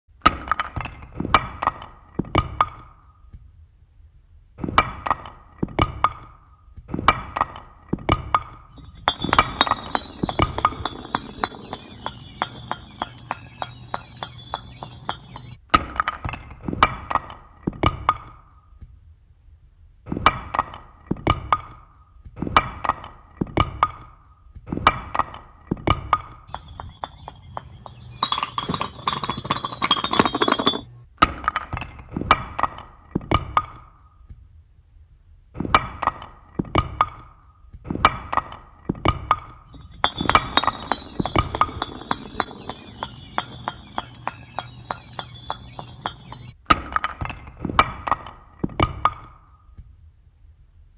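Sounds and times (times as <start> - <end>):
high chimes ringing: 8.9 - 15.6, 26.5 - 31.0, 39.9 - 46.6.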